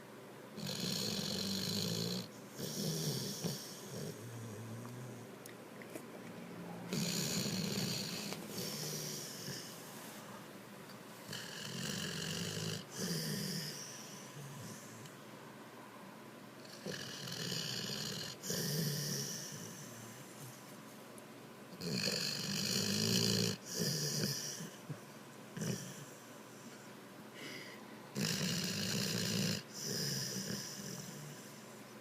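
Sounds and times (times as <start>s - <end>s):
dog snoring: 0.6s - 5.3s, 6.9s - 9.8s, 11.2s - 15.1s, 16.6s - 20.3s, 21.8s - 25.0s, 25.6s - 26.3s, 27.4s - 31.7s
dog breathing: 6.9s - 10.2s.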